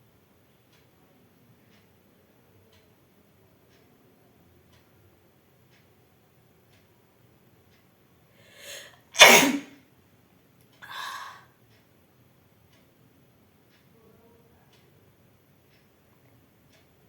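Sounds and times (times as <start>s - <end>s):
soft breathy sound: 8.3s - 9.1s, 10.8s - 11.5s
quick breath in: 8.4s - 9.7s, 10.8s - 11.4s
person sneezing: 8.5s - 9.7s.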